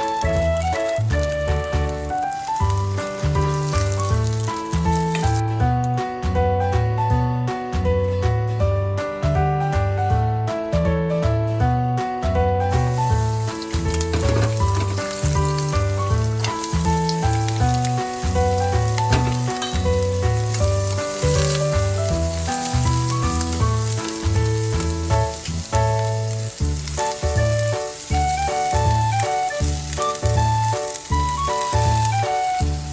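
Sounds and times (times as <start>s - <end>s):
food sizzling in frying: 0.0s - 5.5s, 12.7s - 32.9s.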